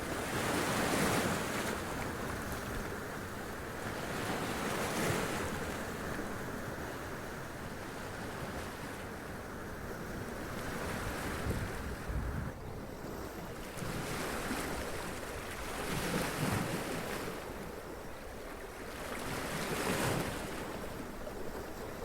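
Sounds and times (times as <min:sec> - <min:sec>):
wind rumble on microphone: 0:09.5 - 0:14.7.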